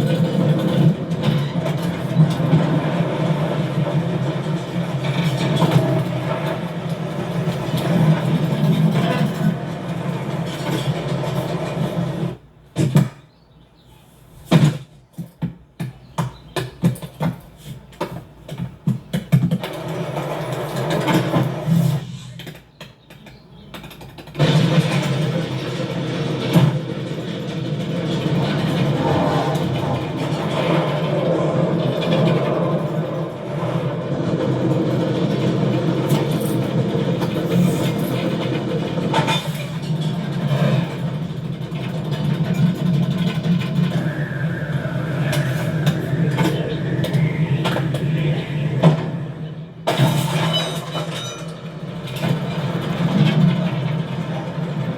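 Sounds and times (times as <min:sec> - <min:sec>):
clattering knocks and clicks: 0:00.0 - 0:13.5, 0:14.5 - 0:54.9
machinery humming: 0:24.4 - 0:54.9.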